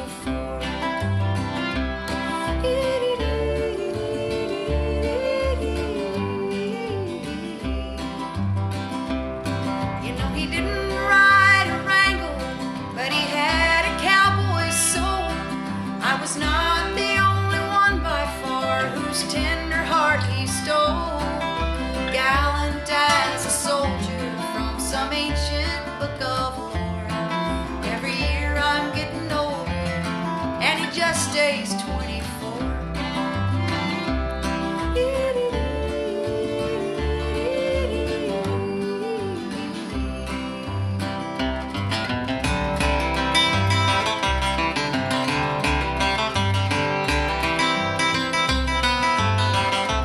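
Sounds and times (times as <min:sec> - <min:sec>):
person singing: 0:00.0 - 0:08.6, 0:10.0 - 0:41.9
steady bass line: 0:00.0 - 0:30.6, 0:31.9 - 0:37.9, 0:38.5 - 0:50.0
country music with guitar: 0:00.0 - 0:50.0.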